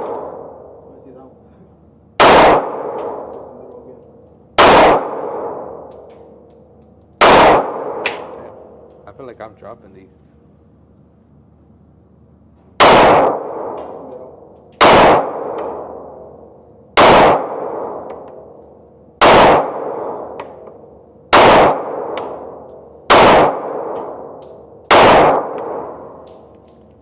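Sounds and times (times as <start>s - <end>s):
handgun shots echoing: 4.6s - 9.0s, 21.4s - 22.5s, 23.1s - 27.0s.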